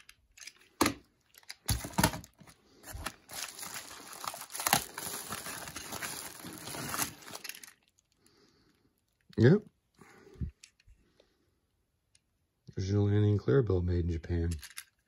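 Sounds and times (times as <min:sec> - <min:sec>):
packaging crinkling: 0:01.3 - 0:08.2.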